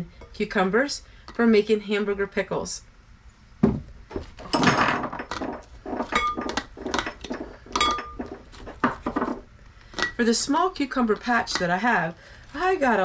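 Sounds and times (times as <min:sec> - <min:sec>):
dishes and utensils clattering: 0:04.5 - 0:09.4.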